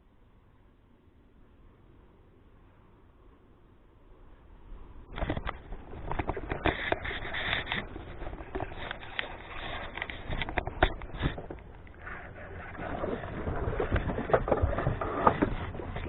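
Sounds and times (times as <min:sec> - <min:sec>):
rustling close to microphone: 0:04.8 - 0:16.0.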